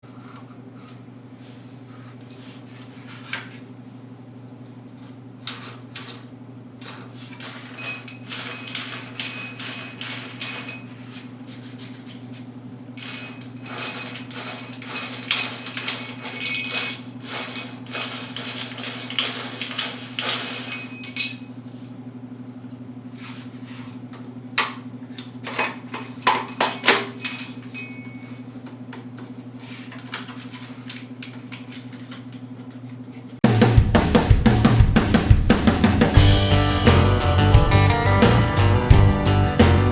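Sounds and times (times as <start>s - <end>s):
steady low hum: 33.5s - 39.9s.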